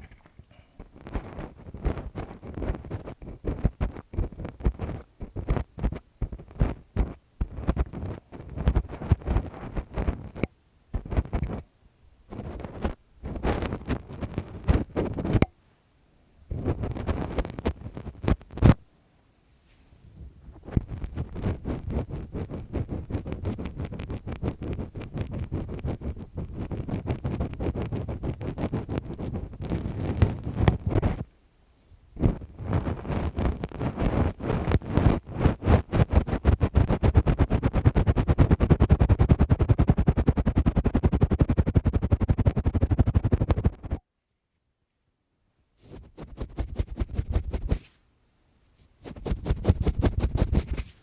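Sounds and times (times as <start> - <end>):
gloved hands rubbing and scratching: 0.8 - 10.4, 12.3 - 15.4, 16.5 - 18.8, 20.6 - 31.3, 32.2 - 44.0, 45.8 - 51.0.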